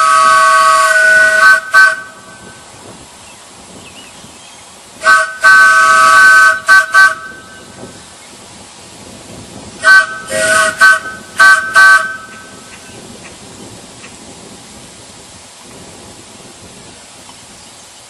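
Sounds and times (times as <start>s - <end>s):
wooden train whistle toots: 0.0s - 2.7s, 5.0s - 7.8s, 9.8s - 12.7s.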